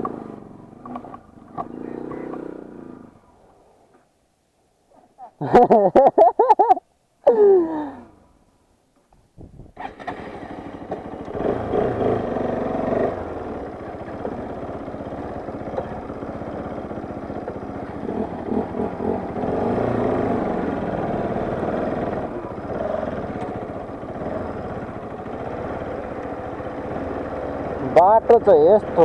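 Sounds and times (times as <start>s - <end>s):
motorcycle engine revving: 0.0s - 3.5s, 9.8s - 29.0s.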